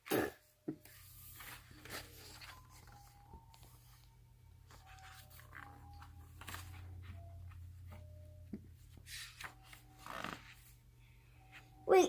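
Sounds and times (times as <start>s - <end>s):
paper book rustling: 0.9s - 8.0s, 8.8s - 10.8s.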